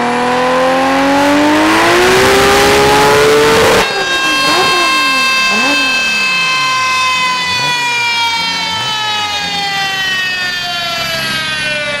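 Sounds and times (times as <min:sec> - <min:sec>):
engine blipped: 0:00.0 - 0:12.0
high whine falling in pitch: 0:02.1 - 0:09.4.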